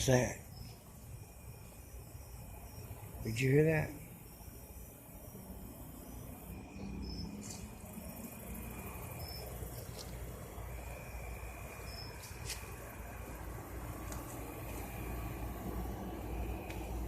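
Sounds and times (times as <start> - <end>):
insects chirping: 0.0 - 17.0
steady low rumble: 0.0 - 17.0
faint sharp clicks: 14.0 - 14.3.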